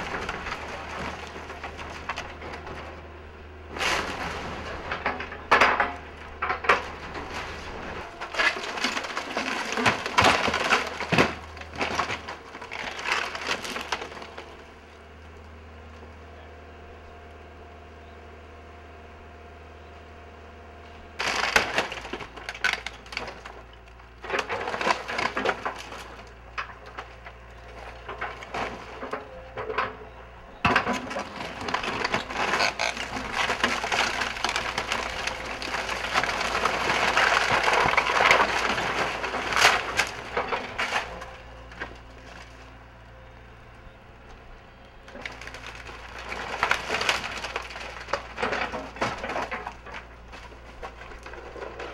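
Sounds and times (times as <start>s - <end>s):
building crashing: 0.0s - 3.0s, 3.7s - 14.6s, 21.2s - 30.0s, 30.6s - 42.6s, 45.1s - 51.9s
timber cracking and splintering: 0.0s - 3.1s, 3.7s - 14.9s, 21.2s - 30.0s, 30.6s - 42.8s, 45.0s - 51.9s
excavator engine hum: 0.0s - 51.9s.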